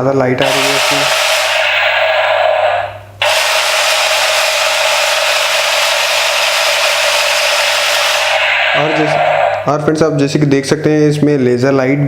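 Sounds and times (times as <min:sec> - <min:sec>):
toy gun electronic gunfire: 0:00.4 - 0:09.7.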